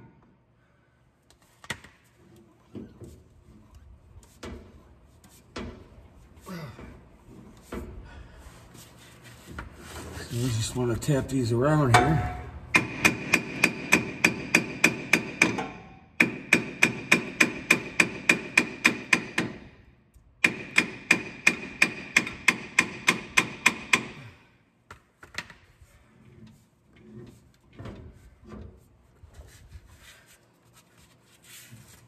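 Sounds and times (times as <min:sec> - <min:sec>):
hammer tapping on metal: 0:11.9 - 0:19.6.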